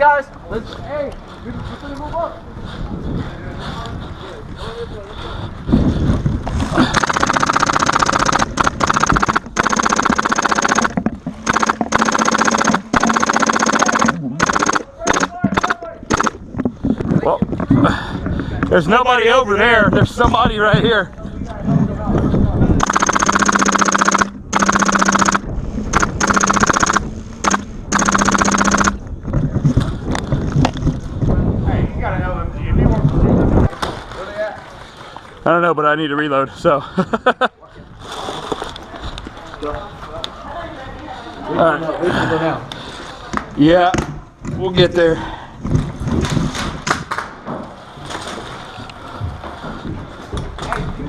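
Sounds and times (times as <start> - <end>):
airsoft machine gun firing bursts: 6.8 - 16.4, 22.8 - 29.0.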